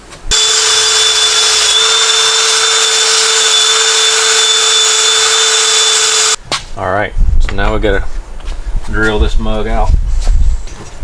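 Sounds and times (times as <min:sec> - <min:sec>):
electric power tool motor whining: 0:00.3 - 0:06.4.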